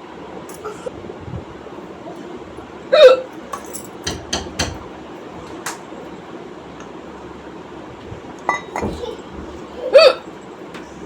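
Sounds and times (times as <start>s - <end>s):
woman hiccupping: 2.9s - 3.3s, 9.8s - 10.3s.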